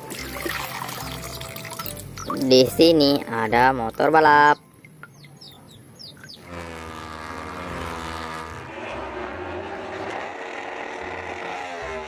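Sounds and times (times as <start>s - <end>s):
racing motorbike engine: 5.1s - 12.0s.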